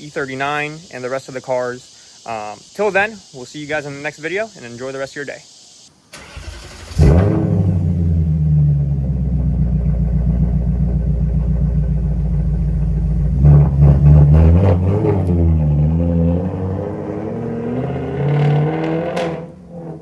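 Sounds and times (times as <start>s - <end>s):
car engine idling and revving: 6.2s - 20.0s.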